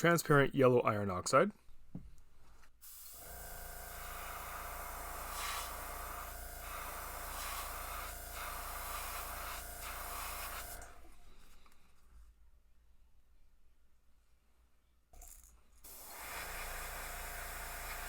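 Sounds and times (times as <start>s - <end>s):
airbrush spraying hiss: 2.8s - 10.9s, 15.9s - 17.1s
air compressor humming: 2.8s - 11.2s, 15.8s - 18.0s.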